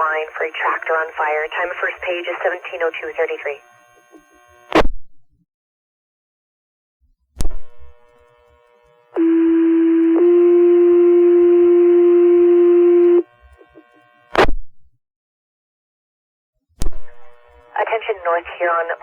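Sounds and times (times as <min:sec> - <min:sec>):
radio hiss: 0:00.0 - 0:04.6, 0:17.7 - 0:19.0.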